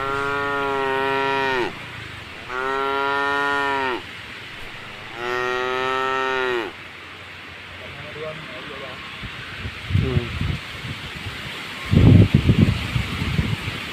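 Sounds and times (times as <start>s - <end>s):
cow mooing: 0.0s - 6.8s.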